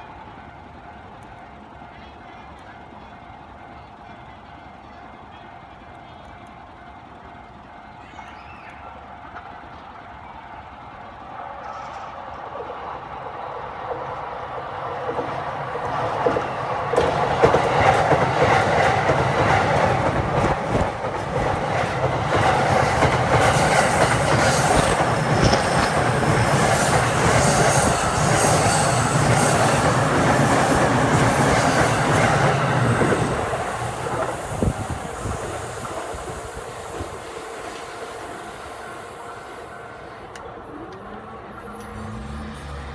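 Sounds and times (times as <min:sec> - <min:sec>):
electric train passing: 0:00.0 - 0:42.9
wheels clattering over rail joints: 0:15.1 - 0:38.0.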